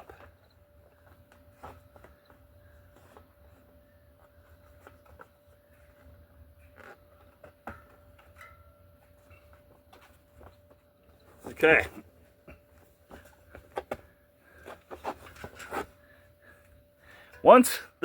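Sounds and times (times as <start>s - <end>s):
faint steady tone: 0.0s - 18.0s
tire rubbing on rim: 14.6s - 16.2s.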